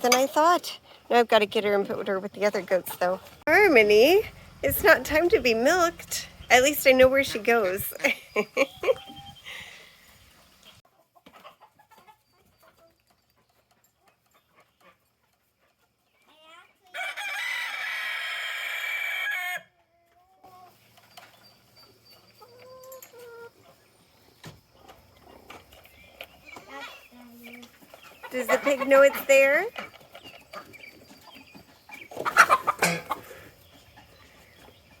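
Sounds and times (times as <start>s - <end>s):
chickens clucking: 0.0s - 17.3s, 18.4s - 35.0s
rooster crowing: 17.0s - 19.7s.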